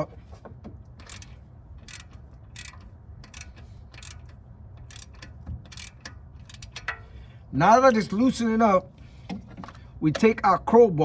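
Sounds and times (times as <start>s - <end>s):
ratchet wrench clicking: 1.0s - 7.0s.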